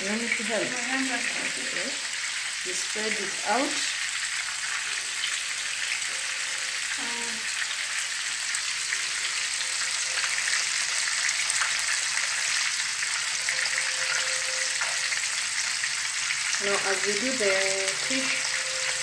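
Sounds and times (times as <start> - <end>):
fish sizzling in hot oil: 0.0 - 19.0.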